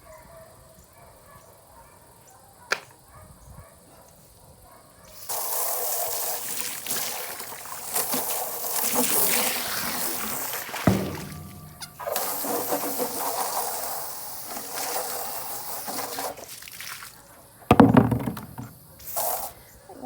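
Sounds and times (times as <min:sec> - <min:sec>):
water spraying hard: 0:05.2 - 0:17.1, 0:19.1 - 0:19.5.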